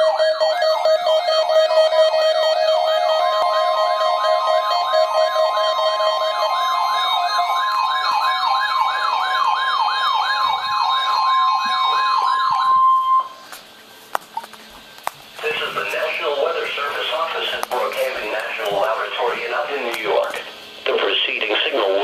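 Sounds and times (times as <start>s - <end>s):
electronic siren sweeping: 0.0s - 13.5s
steady high alarm tone: 0.0s - 13.5s, 15.4s - 22.0s.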